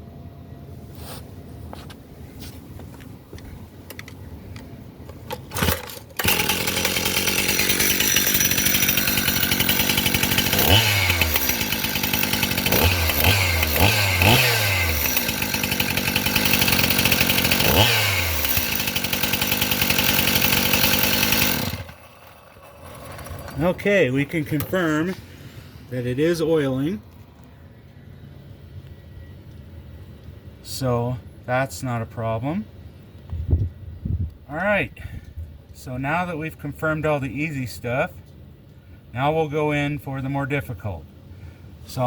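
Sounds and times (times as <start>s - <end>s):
chainsaw revving: 5.4s - 25.6s.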